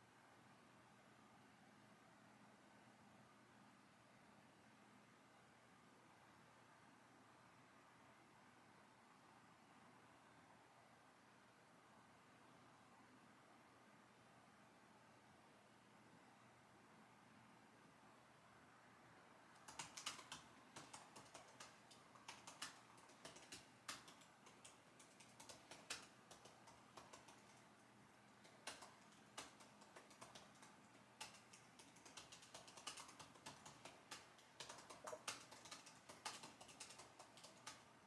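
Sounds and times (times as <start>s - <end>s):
computer keyboard typing: 19.6s - 38.0s.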